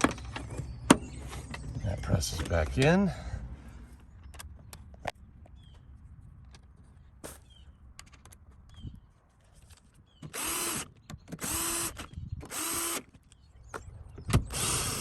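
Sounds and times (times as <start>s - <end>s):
cordless drill motor spinning: 10.3s - 13.1s, 14.4s - 15.0s.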